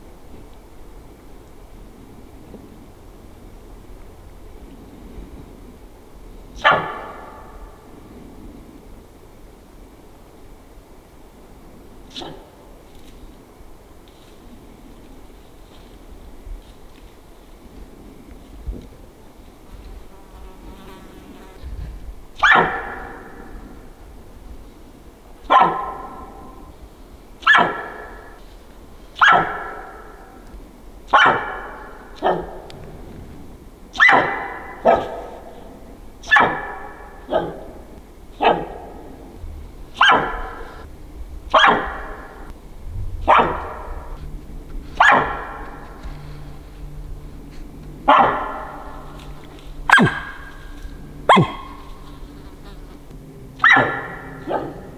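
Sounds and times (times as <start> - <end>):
elk alarm barks: 6.6 - 8.0, 12.1 - 12.8, 22.4 - 24.2, 25.4 - 26.8, 27.4 - 28.5, 29.1 - 32.8, 33.9 - 42.6, 43.2 - 54.9.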